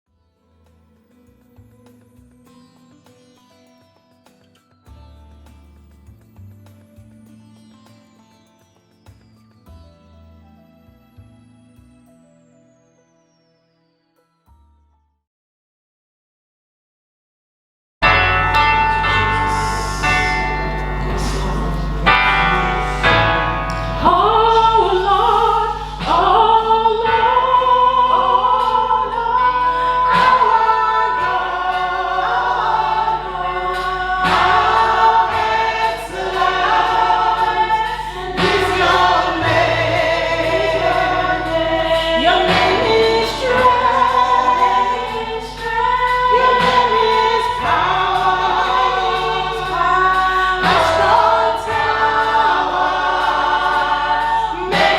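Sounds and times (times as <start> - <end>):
instrumental backing: 18.0 - 27.4, 31.4 - 54.9
gospel choir singing: 18.0 - 54.9.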